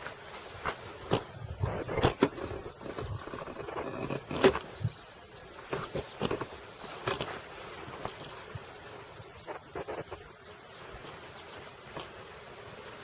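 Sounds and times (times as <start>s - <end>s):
knocks and rustles: 0.0s - 8.8s
bees buzzing: 0.0s - 13.0s.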